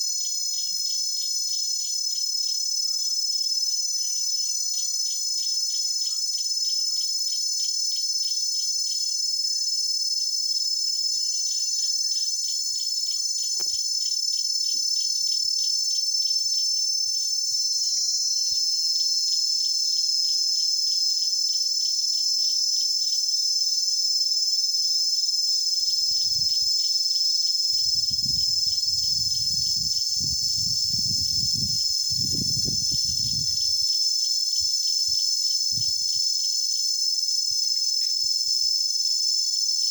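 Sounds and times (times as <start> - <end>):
cicadas buzzing: 0.0 - 39.9.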